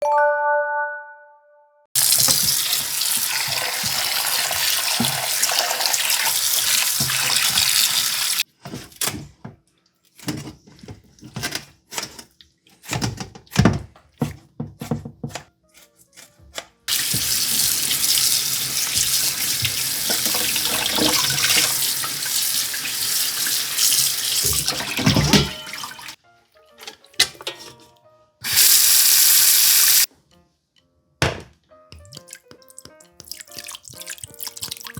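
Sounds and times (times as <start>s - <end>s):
tap running into a sink: 2.0s - 8.4s, 16.9s - 26.1s.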